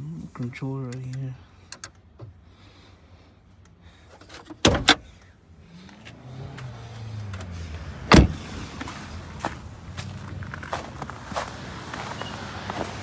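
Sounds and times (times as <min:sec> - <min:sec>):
loud thump: 0:08.1 - 0:08.7.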